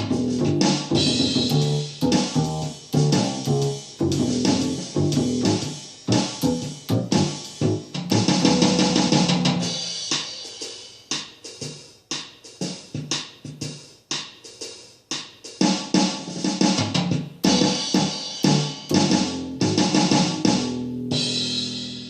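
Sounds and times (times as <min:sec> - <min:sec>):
bass guitar: 0:00.0 - 0:09.6, 0:17.4 - 0:22.0
drum kit beat: 0:00.0 - 0:22.0.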